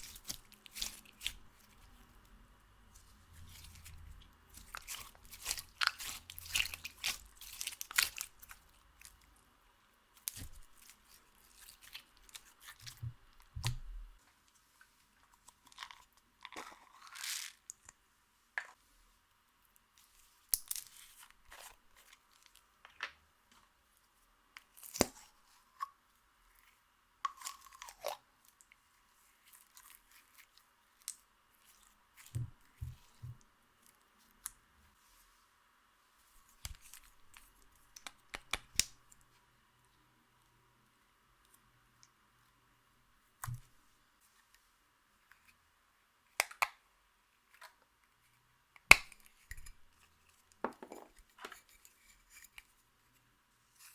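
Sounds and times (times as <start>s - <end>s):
slime crunching and crackling: 0.0s - 2.2s, 3.3s - 9.3s.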